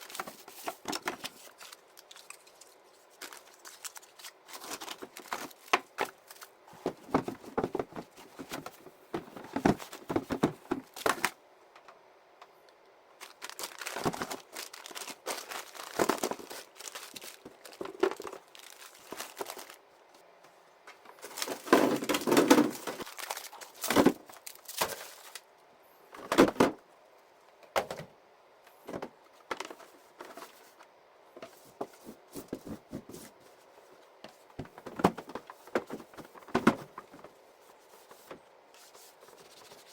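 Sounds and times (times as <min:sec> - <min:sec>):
plastic crinkling and rustling: 0:00.0 - 0:11.4, 0:13.2 - 0:20.2, 0:21.0 - 0:25.5, 0:29.3 - 0:39.9
items knocking and clicking: 0:04.6 - 0:11.4, 0:20.9 - 0:23.1, 0:34.2 - 0:37.3.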